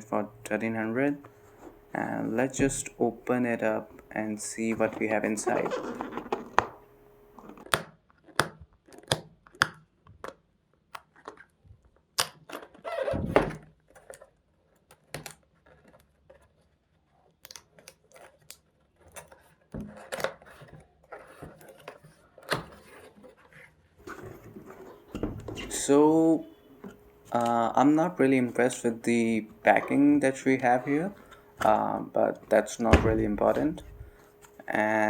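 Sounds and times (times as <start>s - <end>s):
clicks and thunks: 2.5s - 3.1s, 24.0s - 27.8s, 32.4s - 34.7s.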